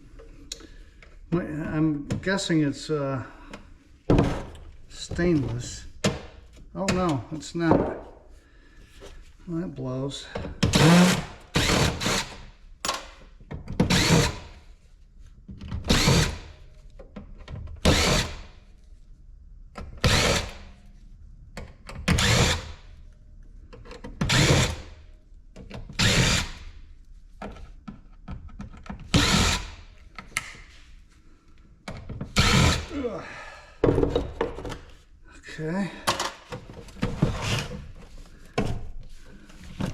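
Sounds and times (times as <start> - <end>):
power drill whirring: 10.7 - 12.5, 13.9 - 14.6, 15.9 - 16.5, 17.9 - 18.4, 20.0 - 20.6, 22.2 - 22.8, 24.3 - 24.9, 26.0 - 26.7, 29.1 - 29.8, 32.4 - 32.9.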